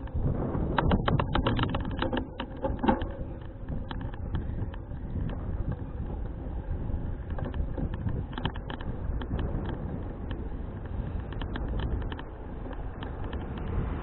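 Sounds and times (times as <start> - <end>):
bicycle rattling and clicking: 0.0 - 14.0
wind buffeting microphone: 0.0 - 14.0.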